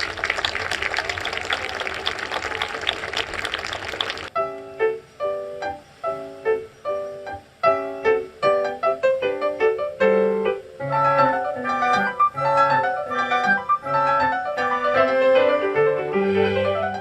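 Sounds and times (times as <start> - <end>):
classical piano music: 4.4 - 17.0.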